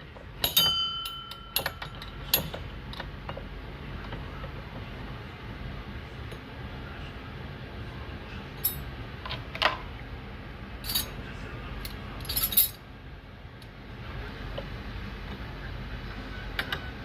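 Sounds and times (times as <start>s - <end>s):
steady low hum: 0.0s - 17.0s
metal tools clinking: 0.4s - 2.6s, 8.6s - 8.8s, 10.8s - 11.2s, 12.2s - 12.8s.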